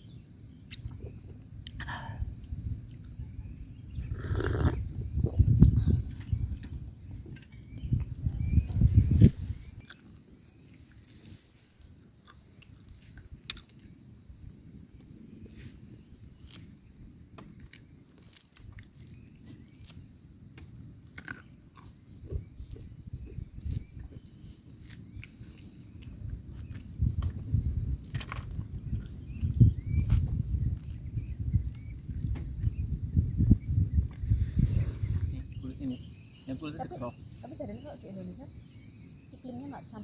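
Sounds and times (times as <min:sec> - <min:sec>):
wind rumble on microphone: 0:00.0 - 0:09.9, 0:21.8 - 0:36.0
high-pitched insect chorus: 0:00.0 - 0:40.0.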